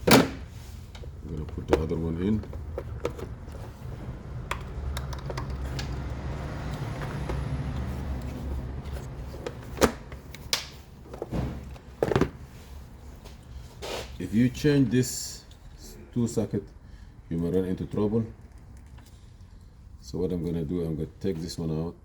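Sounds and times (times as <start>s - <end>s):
clicks and taps handling wire: 0.0s - 12.4s.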